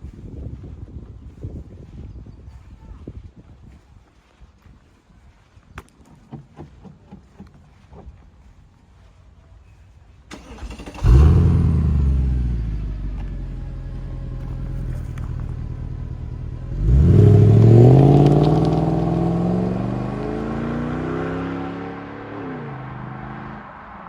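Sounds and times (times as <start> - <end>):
car engine starting and revving: 10.3 - 24.0.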